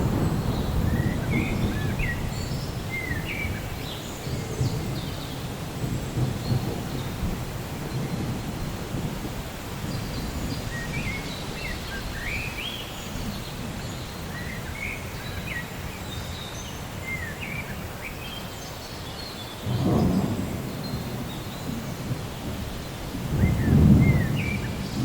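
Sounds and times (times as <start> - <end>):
thunder rumbling: 0.0 - 11.6, 19.7 - 25.0
rain: 0.0 - 25.0.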